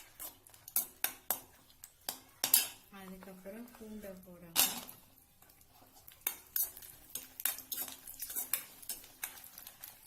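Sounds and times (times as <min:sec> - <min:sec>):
sizzling in hot oil: 0:00.0 - 0:10.0
metal spatula scraping frying pan: 0:06.2 - 0:10.0.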